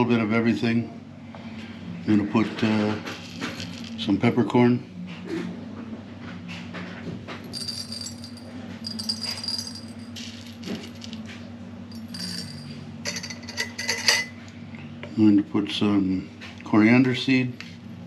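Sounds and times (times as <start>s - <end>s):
peppercorns rattling into jars: 3.1s - 4.0s, 7.5s - 14.3s.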